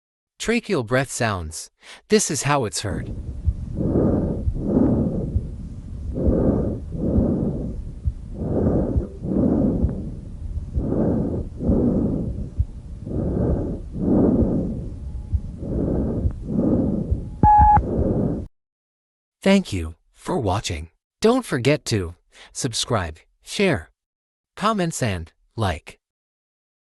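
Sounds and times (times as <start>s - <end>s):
low rumble: 2.9s - 18.5s
tracheal breath sounds: 3.2s - 18.5s.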